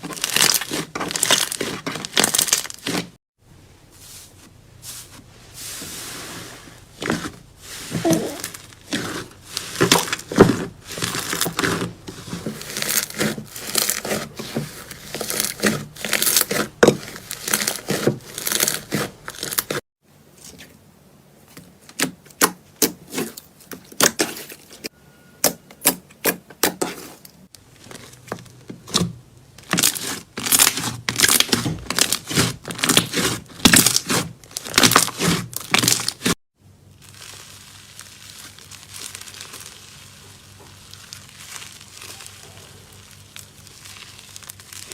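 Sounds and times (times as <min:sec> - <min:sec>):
slime crackling and popping: 0:12.7 - 0:19.8, 0:36.9 - 0:44.9.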